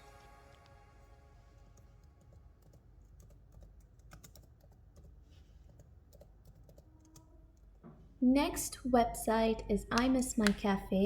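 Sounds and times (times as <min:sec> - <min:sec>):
soft background music: 0:00.0 - 0:02.6
typing on computer keyboard: 0:02.2 - 0:07.8.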